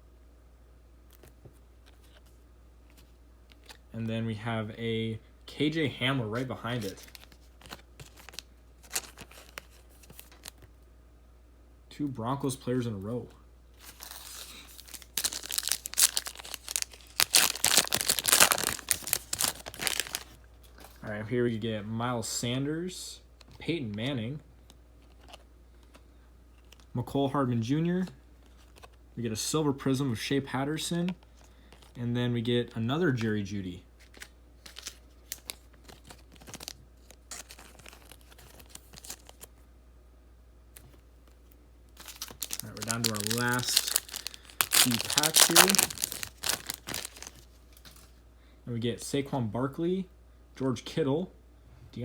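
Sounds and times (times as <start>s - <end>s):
cards being handled: 6.3s - 10.7s, 13.8s - 21.0s, 34.0s - 39.5s, 42.0s - 48.1s
plastic wrapper crinkling and tearing: 6.7s - 10.6s, 13.8s - 20.4s, 34.0s - 39.5s, 42.0s - 48.1s.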